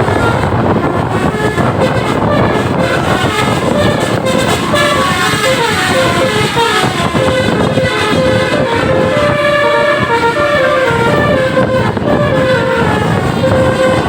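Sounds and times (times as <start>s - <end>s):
loud vehicle noise: 0.0s - 14.0s
multi-tone bus horns playing a tune: 0.0s - 14.0s.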